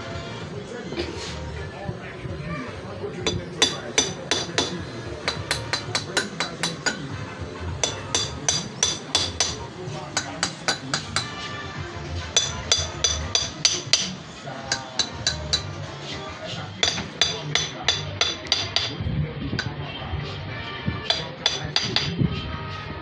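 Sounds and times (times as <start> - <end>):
hammer tapping on metal: 3.3 - 7.2, 7.8 - 11.4, 12.4 - 15.8, 16.8 - 19.0, 21.1 - 22.2.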